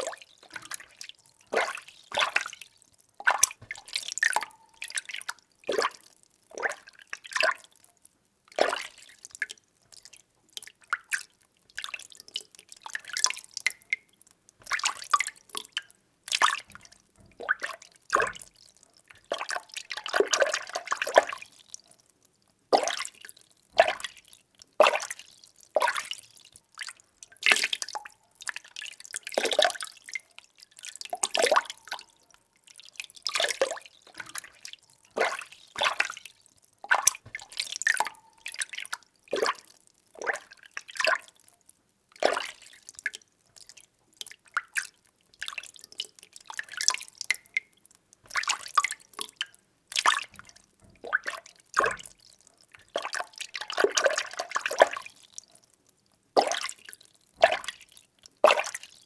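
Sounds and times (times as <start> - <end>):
water sloshing and splashing: 0.0 - 7.6, 14.6 - 21.7, 31.0 - 41.3, 42.2 - 42.9, 48.3 - 55.4.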